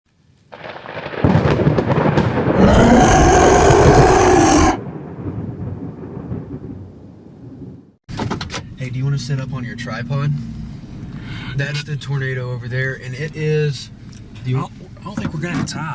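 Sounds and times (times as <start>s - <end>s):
rumbling storm noise: 2.4s - 5.4s.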